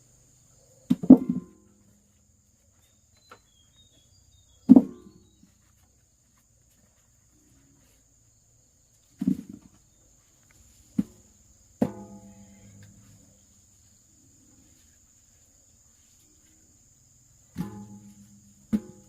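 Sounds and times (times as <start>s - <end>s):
high insect drone: 0.0s - 19.0s
dull thuds: 0.9s - 1.9s, 4.6s - 5.7s, 9.2s - 9.8s, 10.8s - 13.3s, 17.5s - 19.0s.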